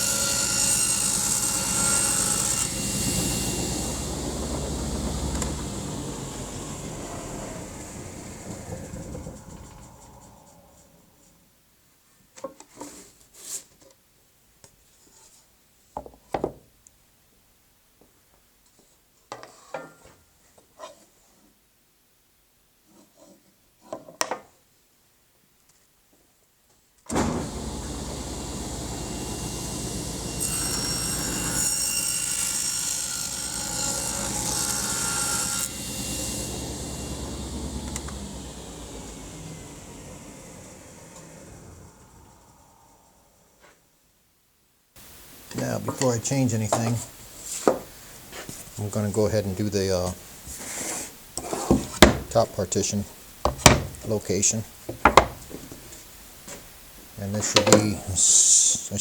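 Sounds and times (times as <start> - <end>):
power tool motor running: 0.0 - 10.7, 27.1 - 43.2
wood rubbing and scraping: 0.0 - 11.2, 27.1 - 42.7
high-pitched whine: 2.6 - 11.3
wooden knocks: 54.9 - 55.8.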